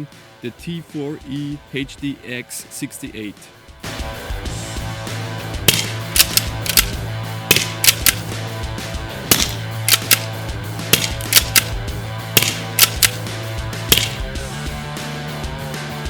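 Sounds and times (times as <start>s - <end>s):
sustained drone music: 0.0s - 16.0s
sharp crack-like hits: 5.6s - 8.4s, 9.3s - 14.6s.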